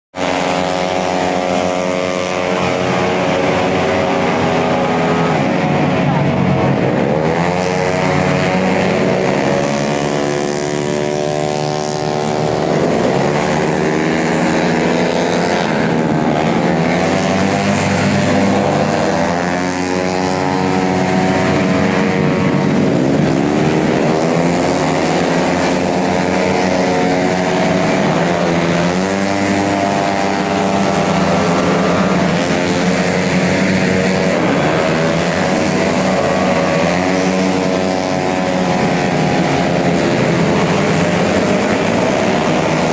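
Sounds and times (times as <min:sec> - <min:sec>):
scooter engines revving: 0:00.0 - 0:42.9.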